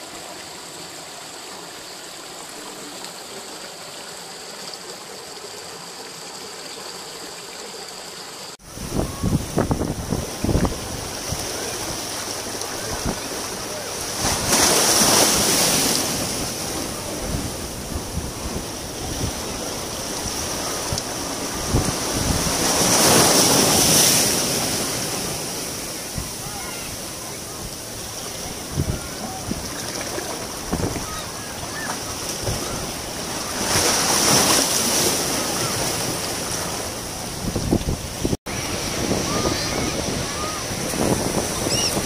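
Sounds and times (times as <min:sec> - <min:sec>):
wind buffeting microphone: 0:08.6 - 0:34.6, 0:35.6 - 0:42.0
waves washing on shore: 0:08.6 - 0:42.0.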